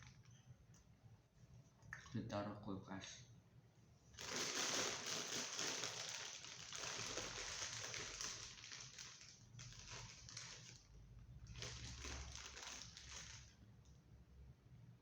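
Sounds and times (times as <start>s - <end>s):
plastic packaging crinkling: 4.2s - 13.6s.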